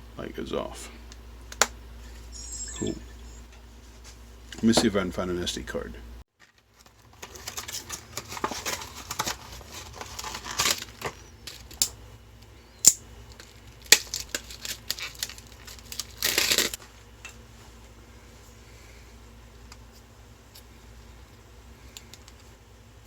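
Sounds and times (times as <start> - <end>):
packaging crinkling and rustling: 6.4 - 12.0, 13.3 - 17.1.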